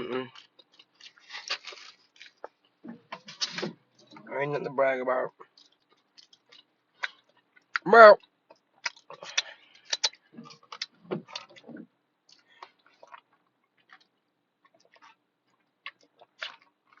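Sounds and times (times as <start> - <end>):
chewing with wet mouth clicks: 0.0 - 2.8, 5.4 - 17.0
lip smacks: 8.5 - 11.7.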